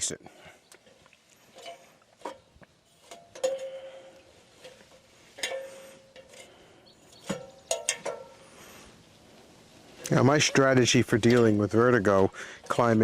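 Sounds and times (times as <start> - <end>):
knocks and clanks on a ladder: 7.2 - 8.4.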